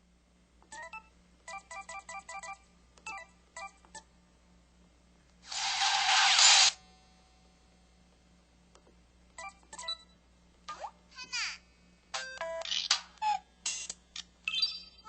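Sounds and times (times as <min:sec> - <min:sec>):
loud hiss-like burst: 0:05.5 - 0:06.8.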